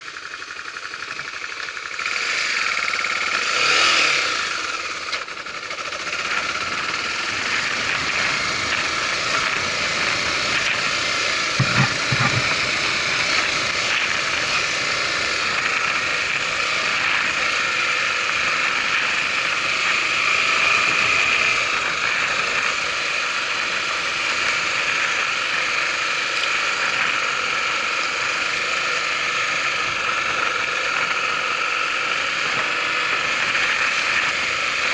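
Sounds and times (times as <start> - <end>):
motorcycle engine running: 0.0 - 34.9.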